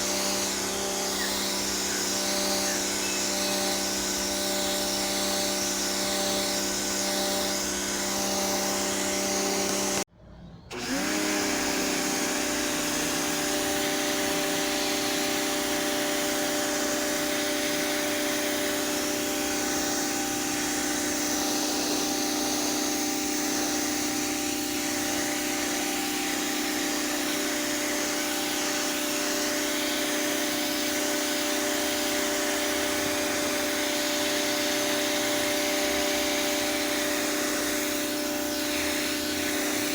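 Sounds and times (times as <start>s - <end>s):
spray hissing: 0.0s - 10.0s, 11.5s - 39.9s
pressure washer motor hum: 0.0s - 10.1s, 10.7s - 39.9s.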